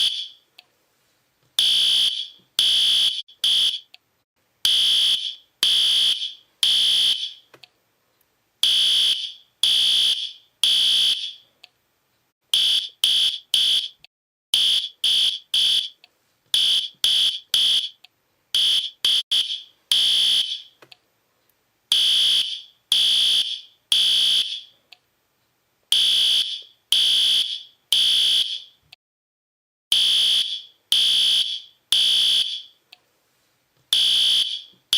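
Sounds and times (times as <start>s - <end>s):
fire alarm blasts: 0.0s - 0.4s, 1.6s - 3.9s, 4.7s - 7.5s, 8.6s - 11.4s, 12.6s - 14.0s, 14.6s - 16.0s, 16.6s - 18.0s, 18.6s - 20.8s, 21.9s - 24.8s, 25.9s - 28.8s, 29.9s - 32.8s, 34.0s - 34.7s.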